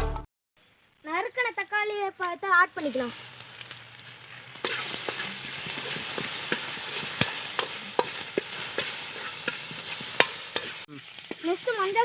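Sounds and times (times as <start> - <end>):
tomatoes sizzling in oil: 0.6 - 12.0
spoon knocking against pan: 4.7 - 10.8.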